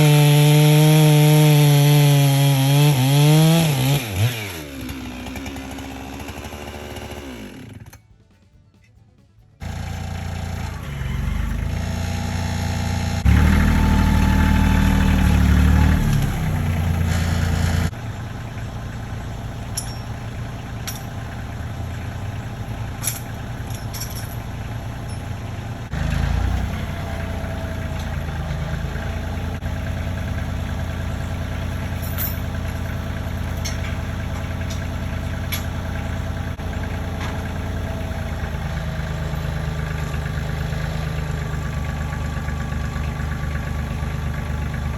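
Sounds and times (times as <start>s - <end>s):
engine idling: 9.3s - 44.9s.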